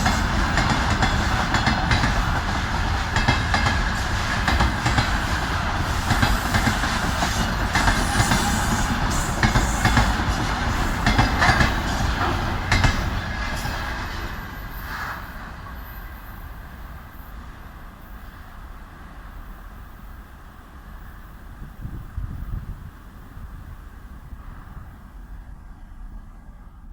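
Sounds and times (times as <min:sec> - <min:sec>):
train wheels clattering over rail joints: 0:00.0 - 0:15.9.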